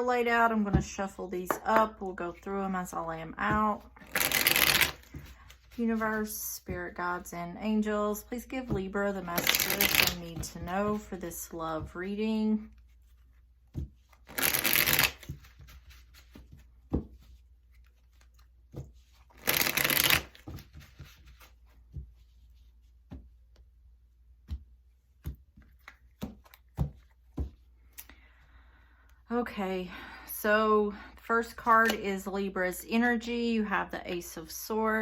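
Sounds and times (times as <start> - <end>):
cards being shuffled: 3.5 - 6.7, 8.6 - 11.4, 12.6 - 22.3, 25.2 - 28.1, 31.5 - 32.0.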